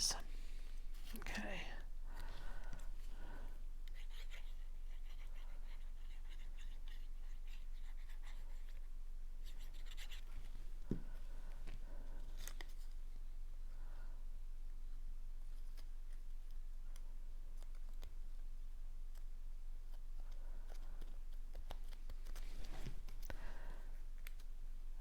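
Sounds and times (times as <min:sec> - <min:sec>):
steady low hum: 0:00.0 - 0:25.0
cardstock scratching and rustling: 0:20.7 - 0:23.3.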